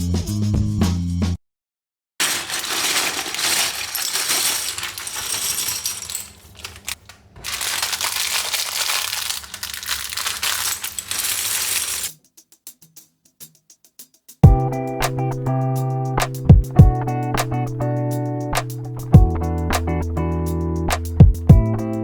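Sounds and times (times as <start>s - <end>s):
plastic pieces clattering: 2.2s - 12.1s.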